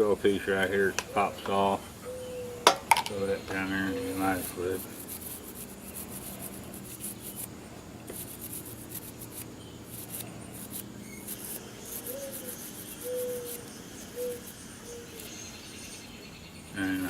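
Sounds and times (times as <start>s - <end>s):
scratchy rubbing and scraping: 3.4s - 7.5s, 8.1s - 15.4s.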